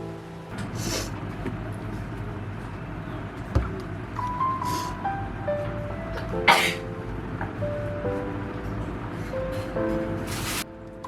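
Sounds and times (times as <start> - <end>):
soft melody of held notes: 4.2 - 11.0.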